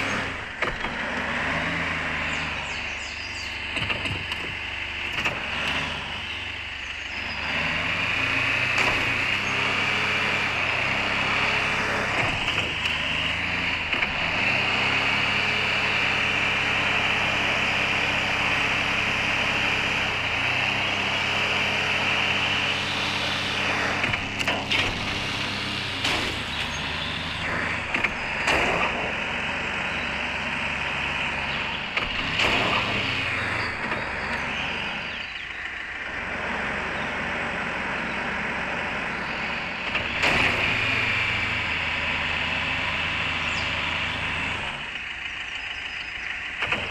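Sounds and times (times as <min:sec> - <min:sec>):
vehicle engine running: 0:00.0 - 0:46.9
knocks and rattles: 0:03.6 - 0:05.5.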